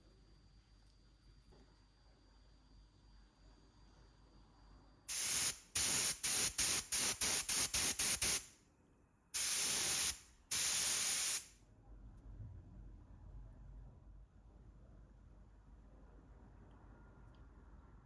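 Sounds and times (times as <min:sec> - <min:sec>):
aerosol spray can hissing: 0:05.1 - 0:08.5, 0:09.4 - 0:11.5.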